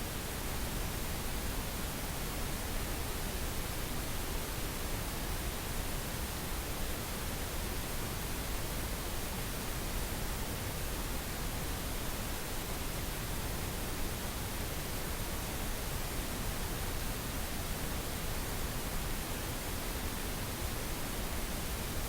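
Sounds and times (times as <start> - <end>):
pink noise hiss: 0.0 - 22.0.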